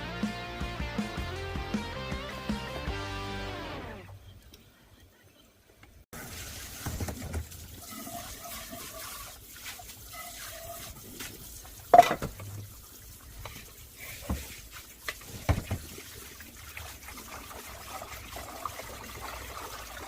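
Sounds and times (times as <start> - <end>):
water trickling in sink: 6.2 - 20.0.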